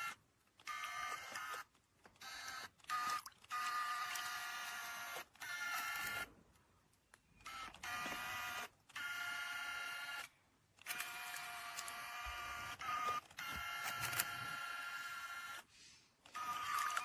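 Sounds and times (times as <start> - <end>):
small electric motor whining: 7.4 - 10.3, 10.9 - 17.0.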